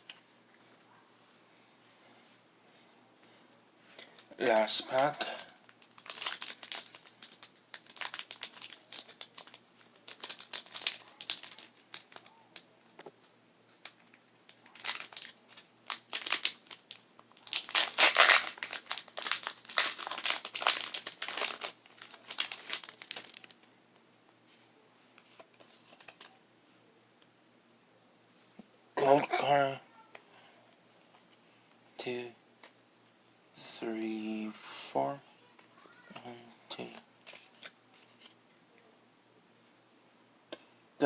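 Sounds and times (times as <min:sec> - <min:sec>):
foil wrapper crinkling: 0:04.5 - 0:12.7, 0:13.7 - 0:23.7, 0:25.2 - 0:26.3.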